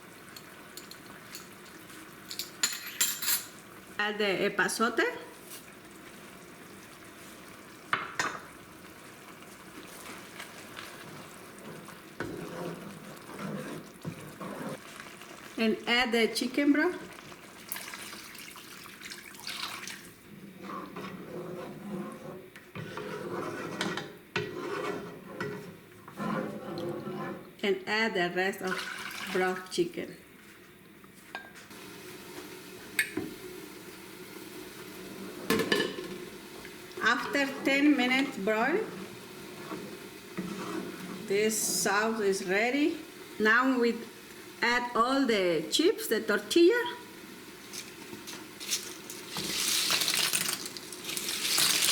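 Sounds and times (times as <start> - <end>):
sauce sizzling in hot oil: 0.0 - 20.2, 31.7 - 51.9
kitchenware clatter: 0.3 - 1.6, 2.2 - 3.6, 35.4 - 36.2
kitchenware clinking against pot: 0.3 - 1.6, 2.3 - 3.6.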